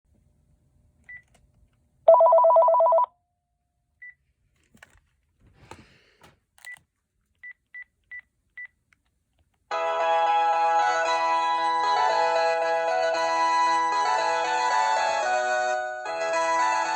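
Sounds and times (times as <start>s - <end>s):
warbling phone ring: 2.1s - 3.1s
melodic ringtone: 9.7s - 16.9s.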